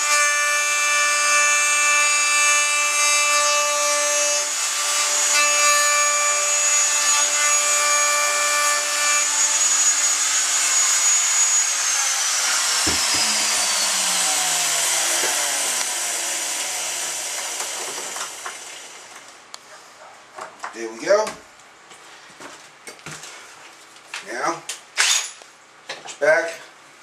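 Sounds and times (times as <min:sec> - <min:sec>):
electric router motor whining: 0:08.8 - 0:19.3
knock: 0:12.8 - 0:13.4.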